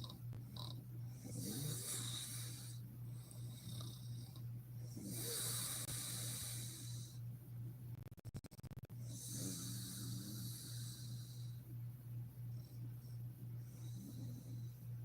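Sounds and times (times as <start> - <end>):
woman snoring: 0.0 - 7.2, 9.0 - 11.6
steady low hum: 0.0 - 15.0.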